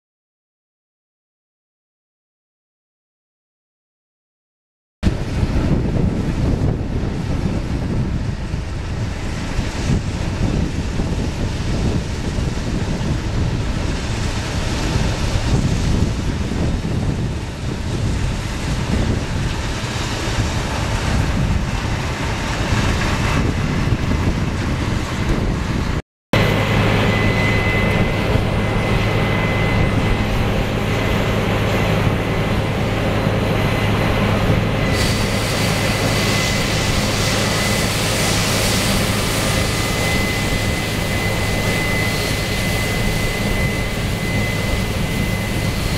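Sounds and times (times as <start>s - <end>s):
combine harvester running: 5.0s - 45.9s
wind noise on microphone: 5.0s - 45.9s
thin high whine: 26.4s - 45.9s.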